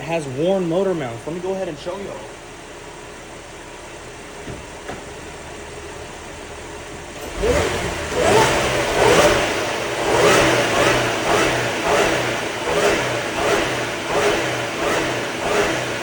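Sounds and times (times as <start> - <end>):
car engine idling and revving: 0.0 - 16.0.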